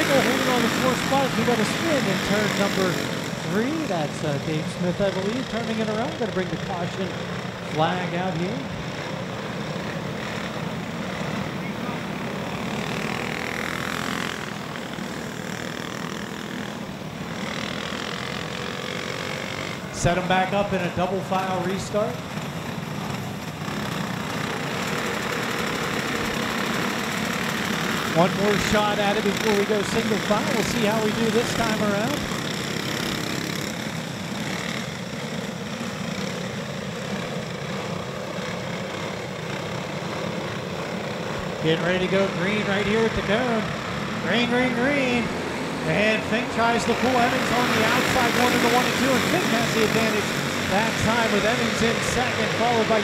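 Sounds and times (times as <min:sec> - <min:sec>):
go-kart engines droning: 0:00.0 - 0:53.0.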